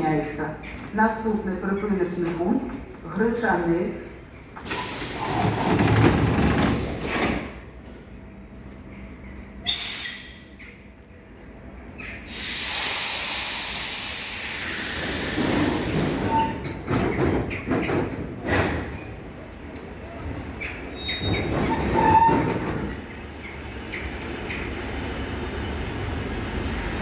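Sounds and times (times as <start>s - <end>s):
train doors closing: 0.1s - 27.0s
compressed air hissing: 4.7s - 5.7s, 12.2s - 16.3s.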